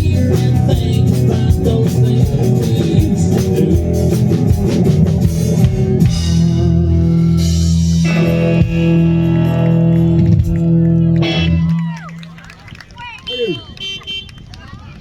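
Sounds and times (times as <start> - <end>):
country band playing: 0.0 - 11.8.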